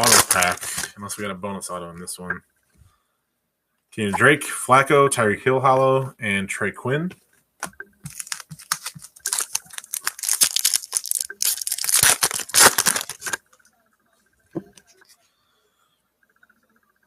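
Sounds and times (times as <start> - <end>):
card pack wrapper tearing: 0.0 - 0.9, 8.1 - 13.4.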